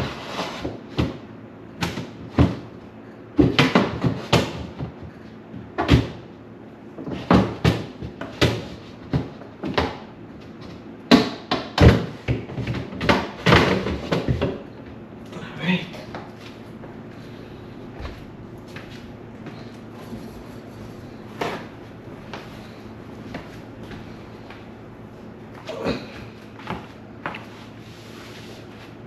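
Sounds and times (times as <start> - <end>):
fridge shelves knocking: 0.6 - 2.8, 3.4 - 6.3, 7.0 - 10.1, 11.1 - 14.7.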